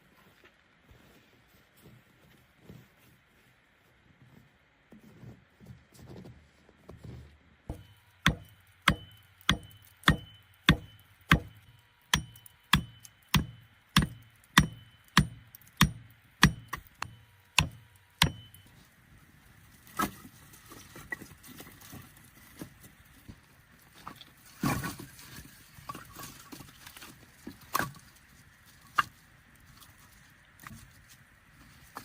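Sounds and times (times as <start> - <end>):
tool striking wood: 7.7 - 18.6
faint ringing: 7.7 - 19.0.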